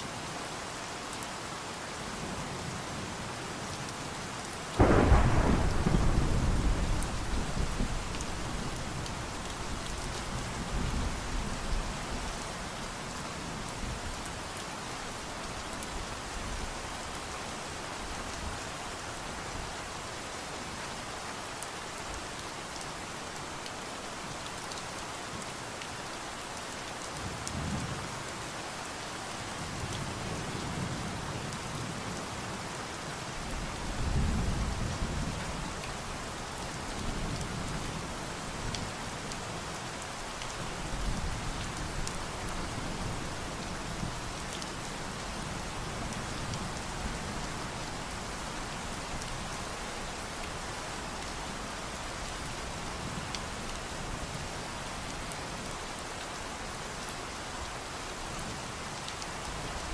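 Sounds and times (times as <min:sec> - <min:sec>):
steady rain falling: 0:00.0 - 0:59.9
rolls of thunder: 0:04.8 - 0:07.9.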